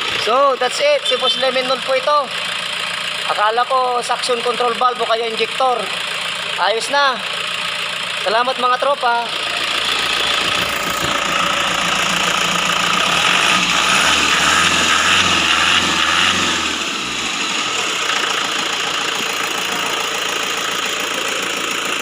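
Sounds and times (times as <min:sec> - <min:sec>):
diesel engine idling: 0:00.0 - 0:22.0.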